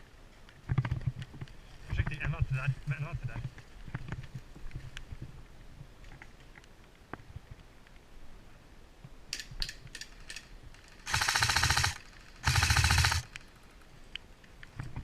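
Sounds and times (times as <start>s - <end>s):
airsoft gun full-auto bursts: 10.8s - 13.4s.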